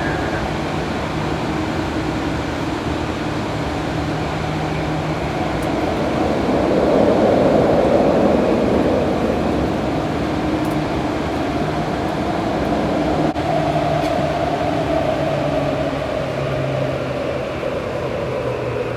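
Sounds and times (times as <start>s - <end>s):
train wheels rumbling on track: 0.0s - 18.9s.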